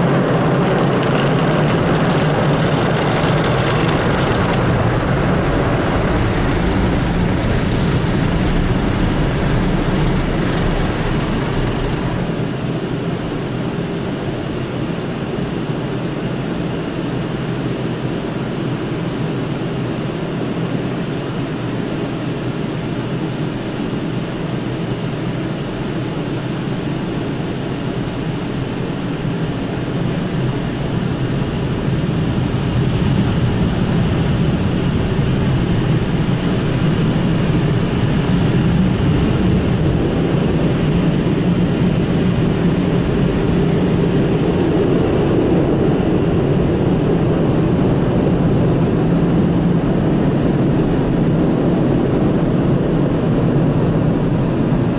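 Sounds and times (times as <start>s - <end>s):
car wash machine running: 0.0s - 14.2s.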